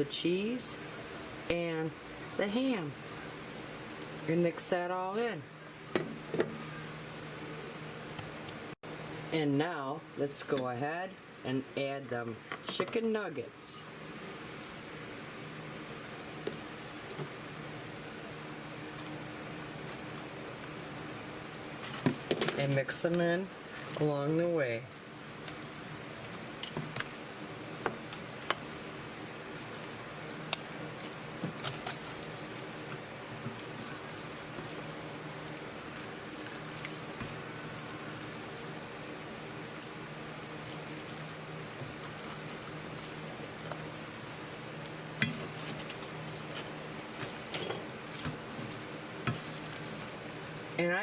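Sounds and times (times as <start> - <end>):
steady low hum: 0.0 - 51.0
spoon stirring wet food: 29.8 - 38.7.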